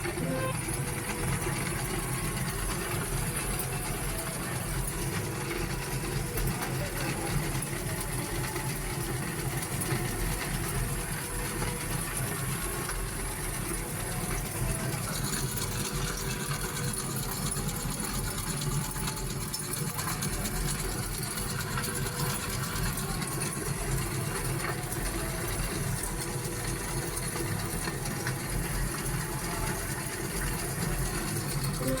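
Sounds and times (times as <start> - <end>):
steady wheel drone: 0.0 - 8.2, 29.3 - 32.0.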